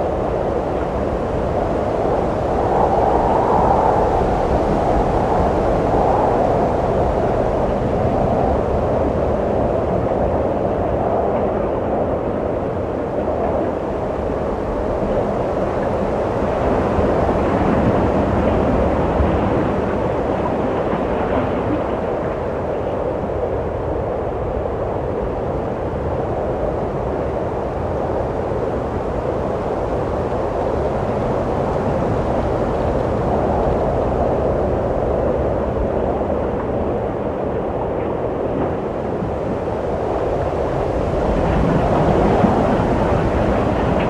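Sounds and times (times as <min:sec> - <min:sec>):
wind blowing: 0:26.8 - 0:44.0.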